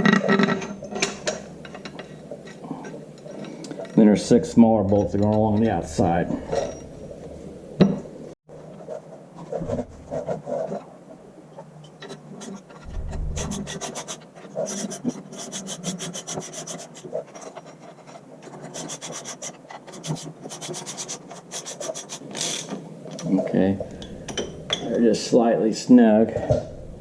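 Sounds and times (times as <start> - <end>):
metal scraping: 11.8 - 22.8.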